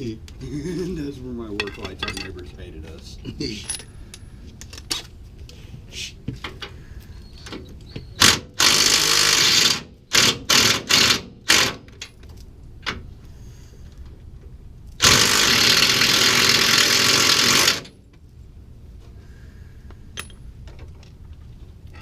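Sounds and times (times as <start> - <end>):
power tool bursts: 8.2 - 11.8, 15.0 - 17.9.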